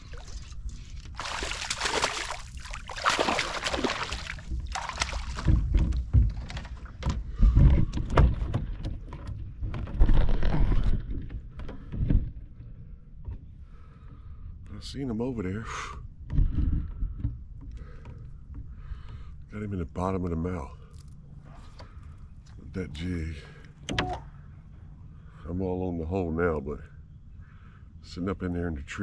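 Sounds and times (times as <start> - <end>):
water splashing and sloshing: 0.0 - 7.7.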